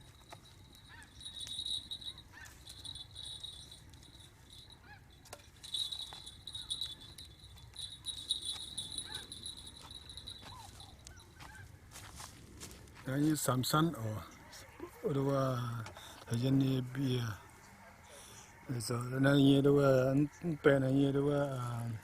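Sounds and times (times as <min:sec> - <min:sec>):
insects chirping: 0:00.0 - 0:12.0.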